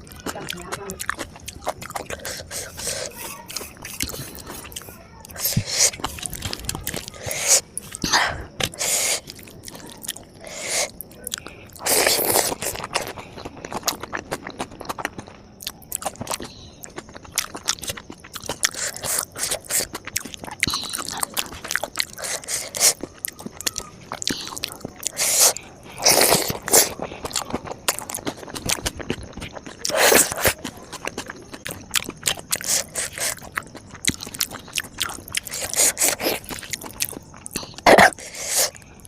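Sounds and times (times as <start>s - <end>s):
wet mouth clicks: 0.0s - 9.8s, 32.5s - 38.8s
chewing and crunching: 0.0s - 39.0s.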